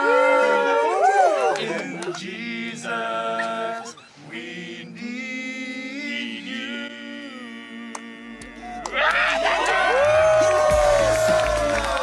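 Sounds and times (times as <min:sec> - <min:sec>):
group singing a cappella: 0:00.0 - 0:09.2.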